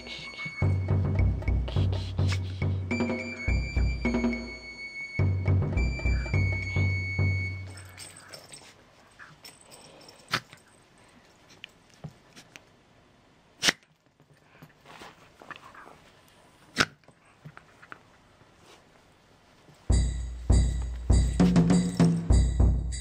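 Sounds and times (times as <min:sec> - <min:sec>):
background music: 0:00.0 - 0:08.2, 0:19.9 - 0:23.0.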